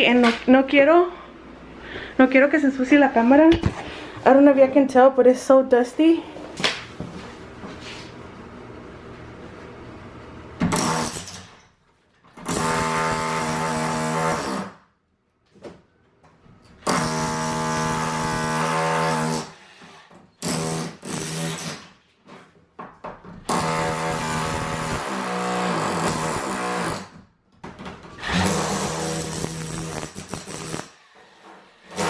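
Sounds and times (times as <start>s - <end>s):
power tool running in bursts: 28.2s - 31.0s.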